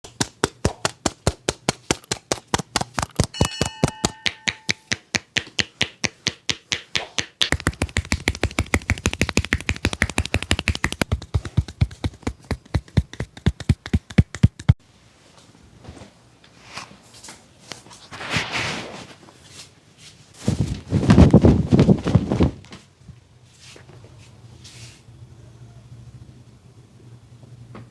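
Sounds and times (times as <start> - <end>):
hand taps and slaps on head: 0.1 - 14.8
soft rubbing and taps: 0.2 - 14.8.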